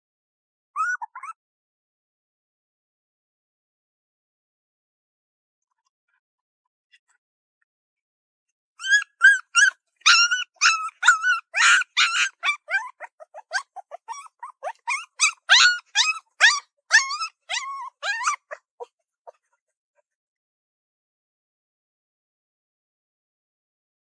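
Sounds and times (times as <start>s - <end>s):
puppy whining and yipping: 0.8s - 1.4s, 8.8s - 19.6s.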